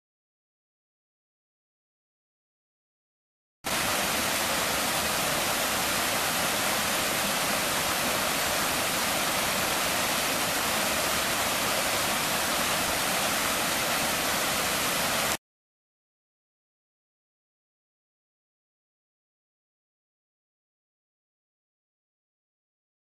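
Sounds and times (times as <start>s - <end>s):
stream water rushing: 3.7s - 15.4s.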